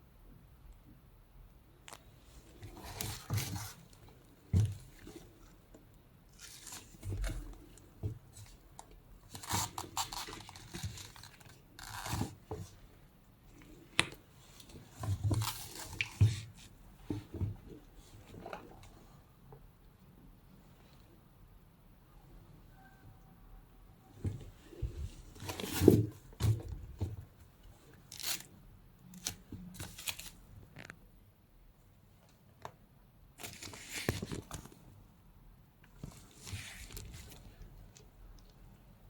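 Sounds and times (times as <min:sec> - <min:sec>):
packaging rustling and tearing: 0:09.3 - 0:12.4.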